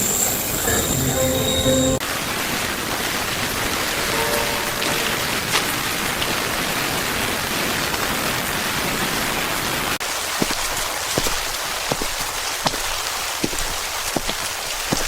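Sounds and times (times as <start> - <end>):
steady rain hiss: 2.0 - 15.0
raindrops striking: 4.8 - 15.0.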